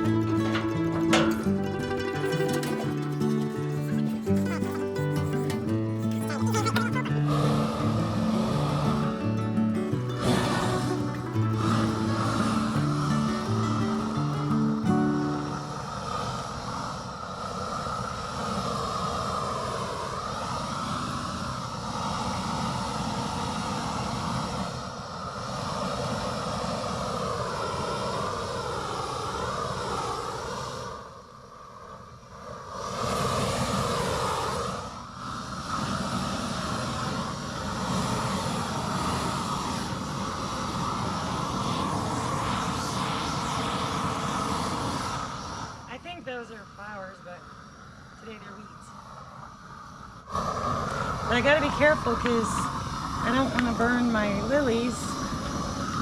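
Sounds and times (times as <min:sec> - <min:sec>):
small motor whining: 0:00.0 - 0:07.6.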